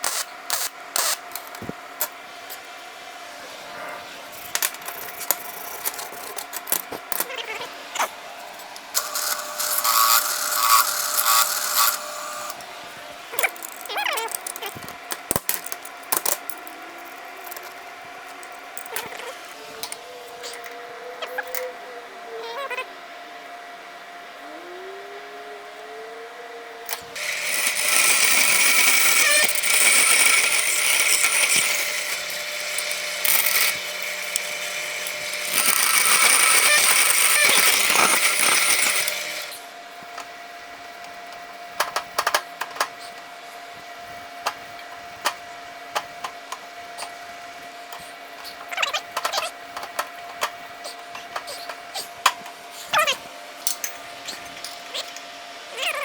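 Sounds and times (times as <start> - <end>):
power tool whining: 0.0 - 21.9, 26.8 - 39.8
hand tools clicking and tapping: 4.4 - 7.3, 13.4 - 20.7, 47.9 - 52.6, 53.6 - 55.2.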